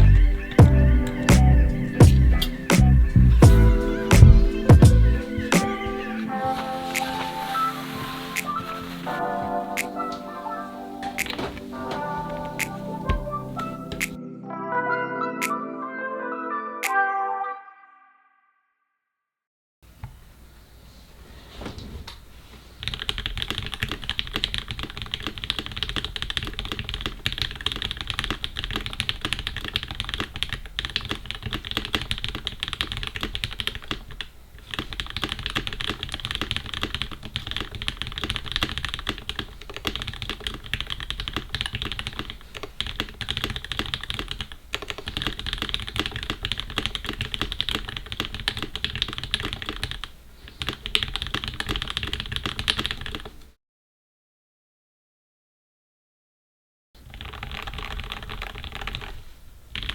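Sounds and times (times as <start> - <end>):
fast mechanical keyboard typing: 22.8 - 53.4, 57.0 - 59.9.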